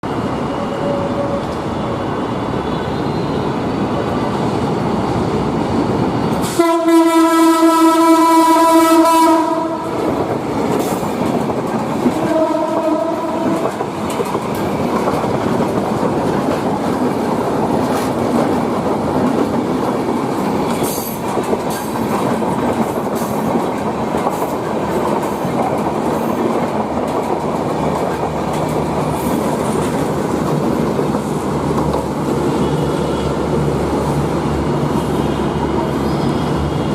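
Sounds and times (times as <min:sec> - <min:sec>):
train wheels rumbling and clacking: 0:00.0 - 0:36.9
train horn blasts: 0:06.4 - 0:10.0, 0:12.2 - 0:13.6.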